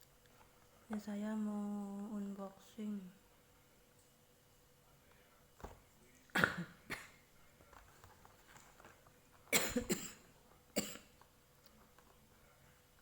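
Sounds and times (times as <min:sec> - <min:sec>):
person coughing: 0:06.3 - 0:07.2, 0:09.5 - 0:11.2.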